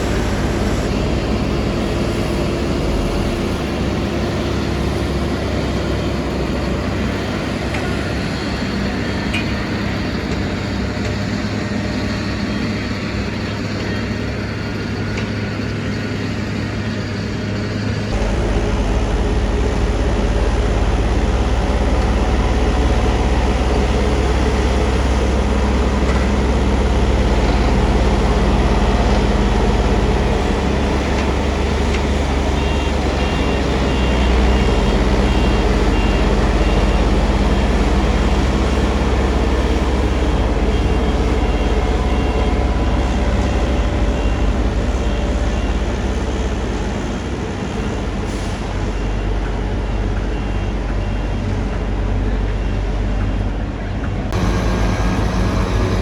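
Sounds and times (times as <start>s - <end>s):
diesel vehicles rumbling: 0.0s - 56.0s
reversing alarm beeping: 18.1s - 53.6s, 54.3s - 56.0s.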